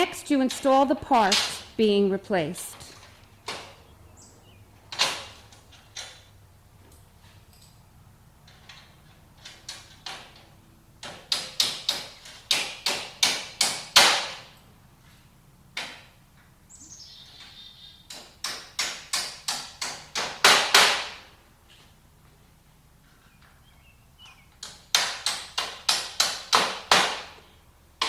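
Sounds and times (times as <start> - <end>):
hammer striking metal pins: 0.7 - 1.8, 18.1 - 21.3.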